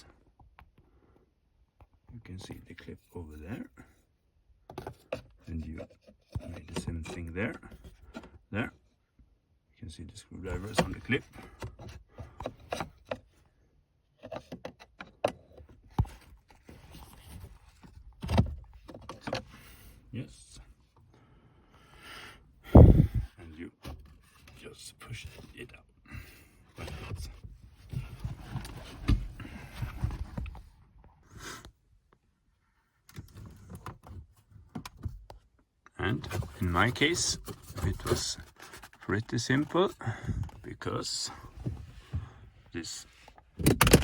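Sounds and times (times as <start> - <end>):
plastic knocks and scrapes: 4.6 - 8.4.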